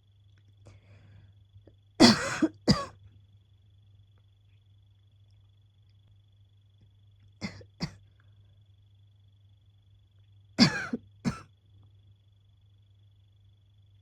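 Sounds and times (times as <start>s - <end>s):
person coughing: 2.0s - 3.0s, 10.6s - 11.4s.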